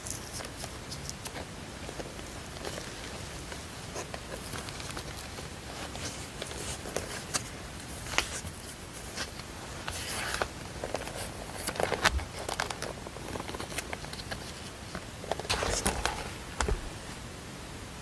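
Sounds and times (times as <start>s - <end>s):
paper rustling: 0.0s - 17.2s
low background hiss: 0.0s - 18.0s.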